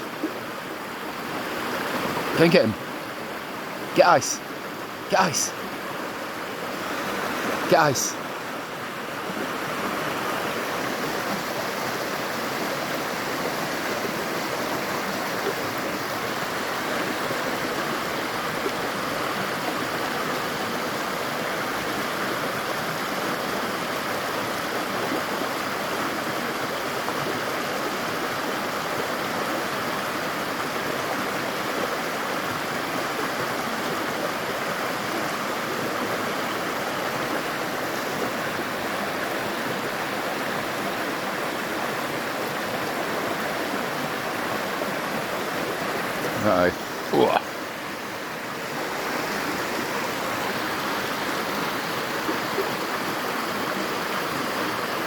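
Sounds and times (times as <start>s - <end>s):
river water rushing: 0.0s - 55.0s.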